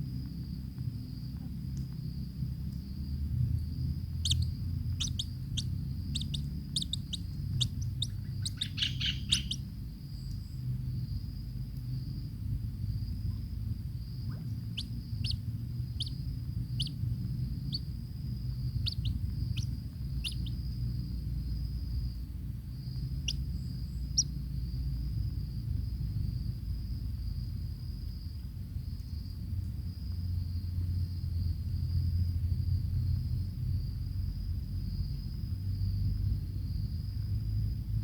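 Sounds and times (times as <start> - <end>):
low rumble: 0.0 - 38.0
bird chirping: 4.1 - 10.6, 14.3 - 17.9, 18.5 - 20.8, 23.0 - 24.3.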